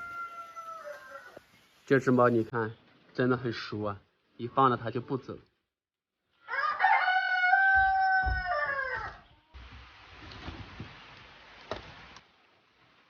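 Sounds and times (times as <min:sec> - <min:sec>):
rooster crowing: 0:00.0 - 0:01.4, 0:06.4 - 0:09.2
rain hiss: 0:00.0 - 0:02.6, 0:09.6 - 0:13.0.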